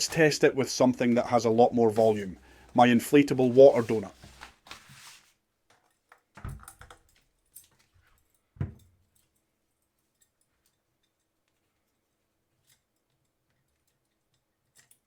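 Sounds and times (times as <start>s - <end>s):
plastic clicks and rattles: 5.7s - 7.9s.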